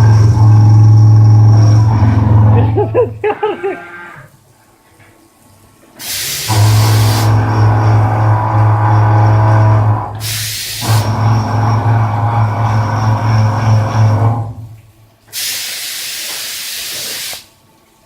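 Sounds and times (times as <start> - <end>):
machine humming: 0.0 - 4.3, 6.0 - 14.8
hiss: 6.0 - 7.4, 10.2 - 11.0, 15.3 - 17.5.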